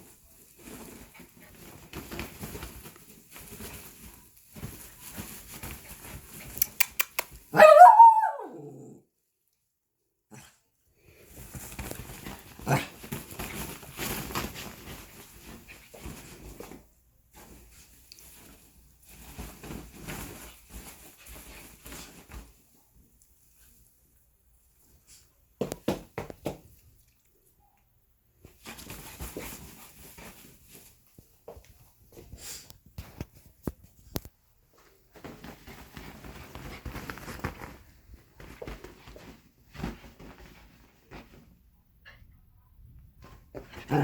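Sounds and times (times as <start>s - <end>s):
animals scuffling: 0.0s - 6.7s, 11.2s - 22.8s, 28.4s - 41.6s
quick clicks: 6.6s - 7.4s
dog barking: 7.5s - 8.8s.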